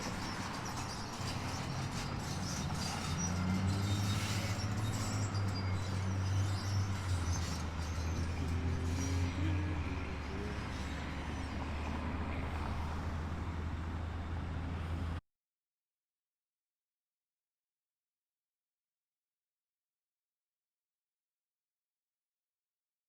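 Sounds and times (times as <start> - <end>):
traffic noise: 0.0 - 15.2.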